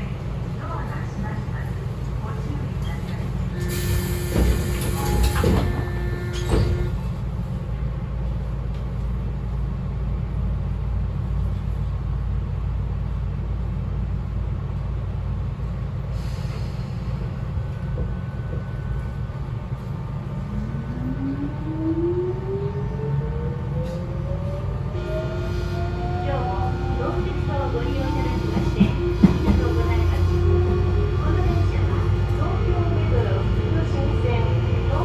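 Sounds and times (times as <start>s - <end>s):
train equipment humming: 0.0s - 35.0s
clunks: 2.8s - 7.6s, 27.4s - 30.4s.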